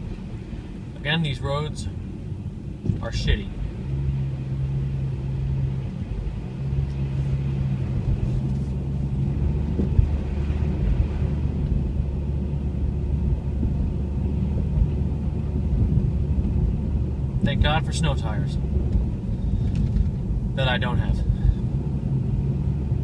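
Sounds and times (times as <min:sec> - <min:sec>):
car engine and road noise: 0:00.0 - 0:23.0
car bump: 0:02.8 - 0:03.3, 0:08.0 - 0:11.8.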